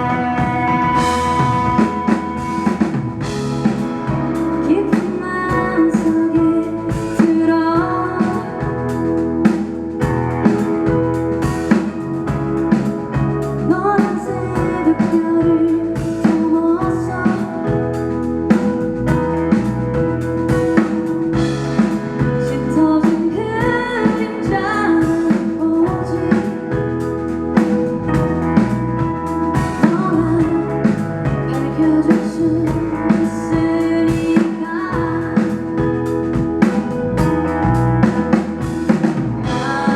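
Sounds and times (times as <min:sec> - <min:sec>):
rock band playing: 0:00.0 - 0:39.9
person singing lead vocal: 0:04.5 - 0:09.1, 0:13.6 - 0:18.1, 0:21.4 - 0:27.0, 0:29.7 - 0:36.2, 0:39.4 - 0:39.9.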